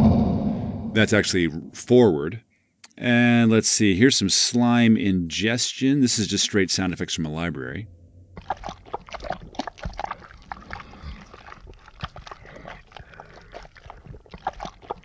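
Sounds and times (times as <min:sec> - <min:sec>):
slimy clicks and smacks: 0:08.4 - 0:15.0.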